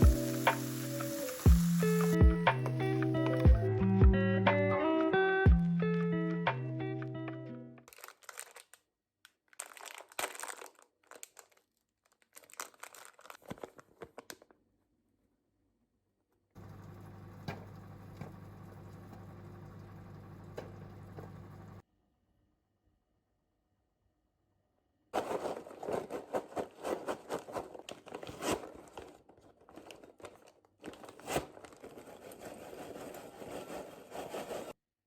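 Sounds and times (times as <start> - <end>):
packaging crinkling and rustling: 7.9 - 14.6, 25.2 - 34.8
low mechanical hum: 16.6 - 21.8.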